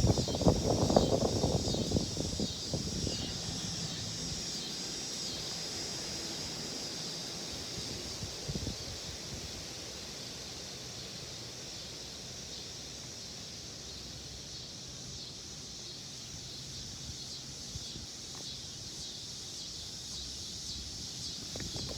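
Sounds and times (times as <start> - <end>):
wind blowing across microphone: 0.0 - 4.6, 7.8 - 9.6, 20.8 - 21.9.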